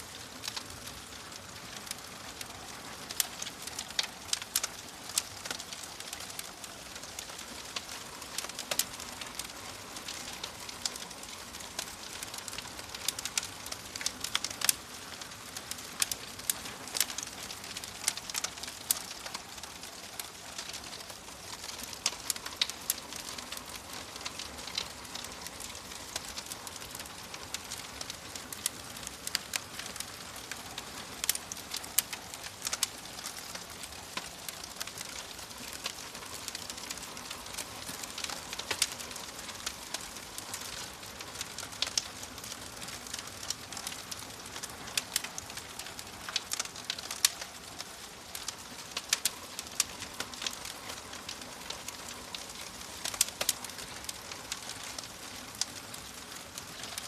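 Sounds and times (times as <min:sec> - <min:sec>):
soft fire hiss: 0:00.0 - 0:57.0
wood fire crackling: 0:00.0 - 0:57.0.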